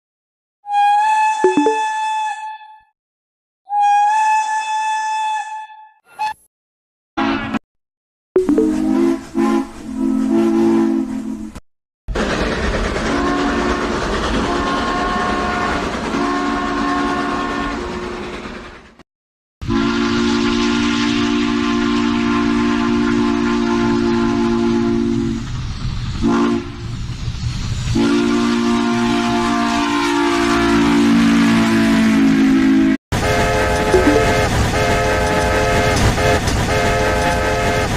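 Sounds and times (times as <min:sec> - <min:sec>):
multi-tone train whistle: 0:00.6 - 0:02.9, 0:03.7 - 0:06.0, 0:07.2 - 0:07.6, 0:08.7 - 0:11.6, 0:13.0 - 0:18.3, 0:19.6 - 0:25.5, 0:26.2 - 0:26.9, 0:27.9 - 0:37.9
running train noise: 0:08.6 - 0:19.0, 0:19.6 - 0:37.9.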